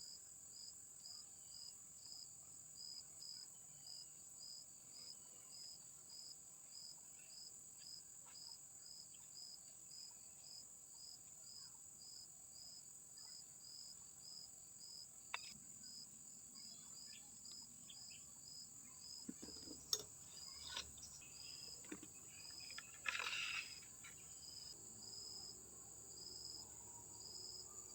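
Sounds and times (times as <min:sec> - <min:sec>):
insect chorus chirping: 0:12.0 - 0:27.9
scratchy rustle: 0:19.3 - 0:24.2.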